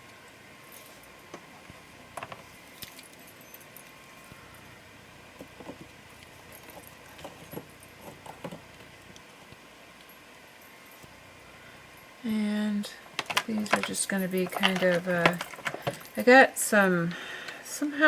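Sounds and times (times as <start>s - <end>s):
faint steady hum: 0.0s - 18.0s
plastic bottles clicking and clinking: 13.2s - 16.2s.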